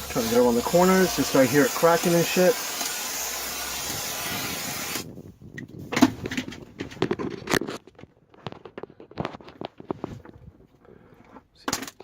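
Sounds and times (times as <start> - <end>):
aerosol can spraying: 0.0 - 5.0.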